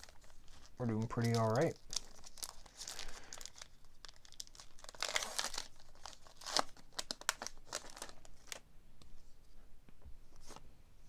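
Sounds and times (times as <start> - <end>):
card pack wrappers crinkling: 0.0 - 8.6.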